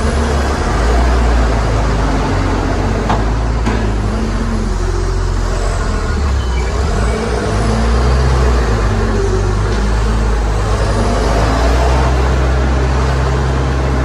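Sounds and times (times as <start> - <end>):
heavy diesel engine droning: 0.0 - 14.0.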